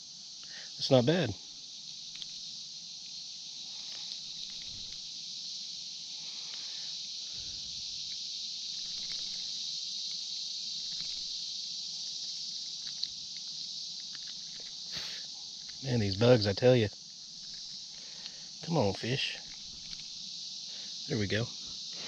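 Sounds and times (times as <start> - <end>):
insects buzzing: 0.0 - 22.0
faint handling clicks: 8.8 - 9.4, 10.9 - 11.3.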